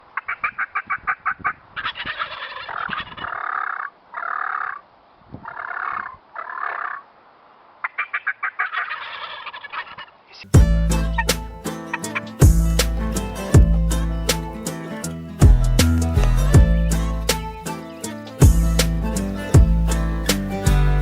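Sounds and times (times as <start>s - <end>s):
turkeys gobbling: 0.2s - 4.8s, 5.4s - 7.0s, 7.8s - 10.1s, 11.0s - 15.1s
music: 10.6s - 21.0s.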